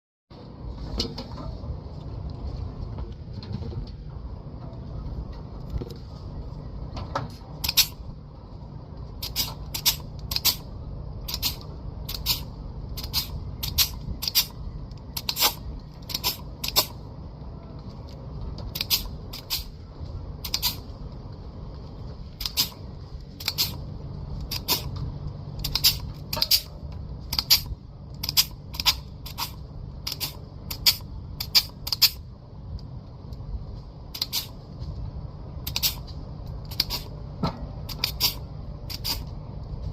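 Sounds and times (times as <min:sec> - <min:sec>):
low steady rumble: 0:00.3 - 0:39.9.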